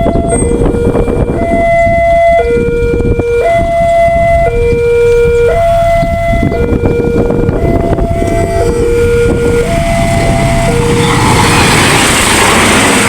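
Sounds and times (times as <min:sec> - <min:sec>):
two-tone level crossing siren: 0:00.0 - 0:11.8.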